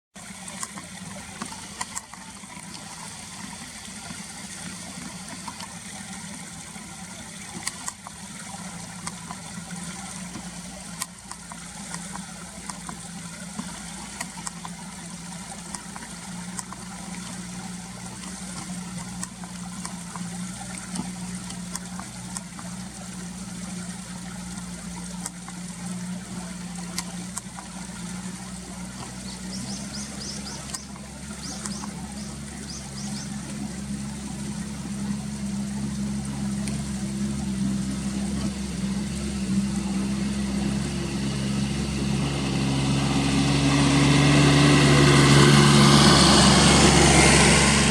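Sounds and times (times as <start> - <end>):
small engine humming: 0.1 - 47.9
sharp clicks: 29.0 - 32.8.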